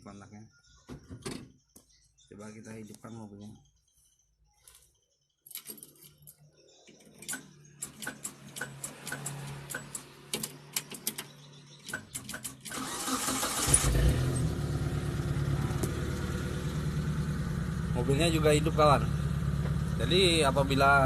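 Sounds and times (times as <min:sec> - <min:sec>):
starter motor cranking: 0:12.4 - 0:14.8
motorcycle engine idling: 0:14.4 - 0:21.0.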